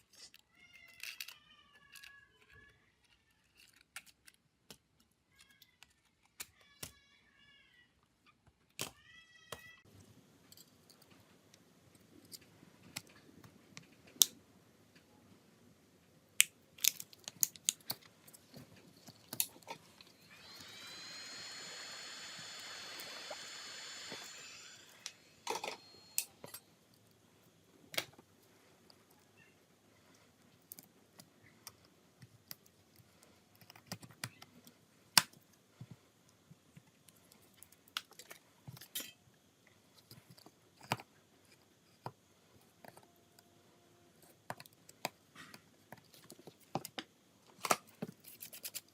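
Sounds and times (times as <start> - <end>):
high-toned whirring: 20.1 - 26.3.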